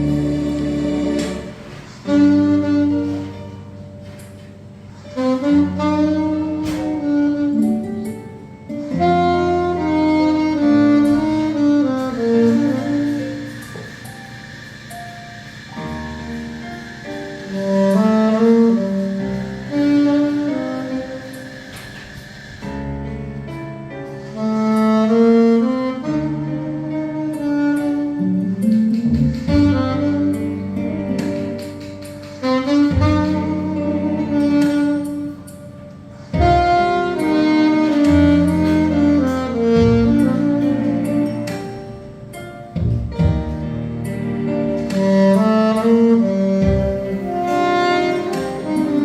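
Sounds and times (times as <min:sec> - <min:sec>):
instrumental accompaniment with bass: 0:00.0 - 0:49.0
saxophone melody: 0:00.0 - 0:49.0.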